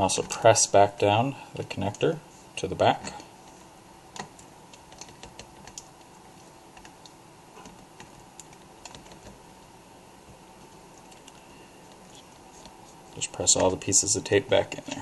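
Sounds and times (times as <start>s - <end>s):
fingers clicking and tapping on laptop: 4.1s - 6.1s, 6.7s - 9.4s.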